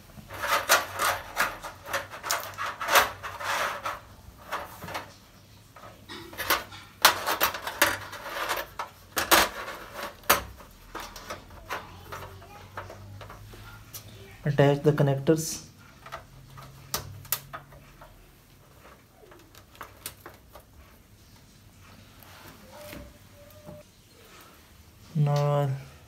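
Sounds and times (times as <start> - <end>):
rubbing of strips: 0.0 - 14.3.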